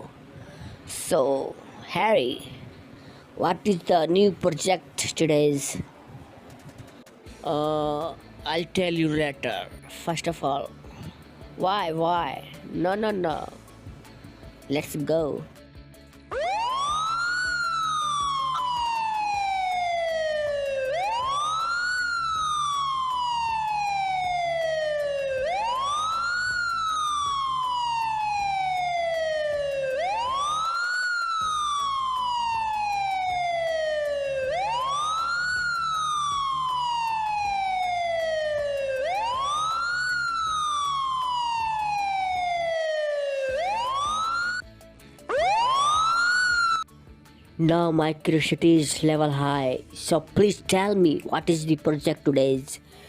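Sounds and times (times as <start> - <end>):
electronic siren wailing: 16.3 - 44.7, 45.3 - 46.9.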